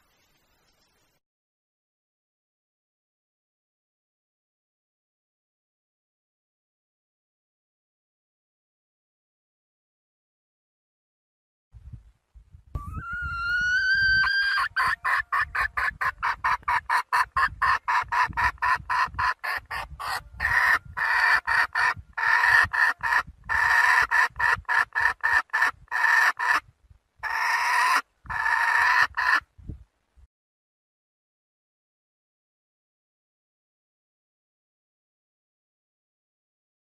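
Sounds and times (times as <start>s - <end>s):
hen calling and clucking: 12.8s - 29.5s.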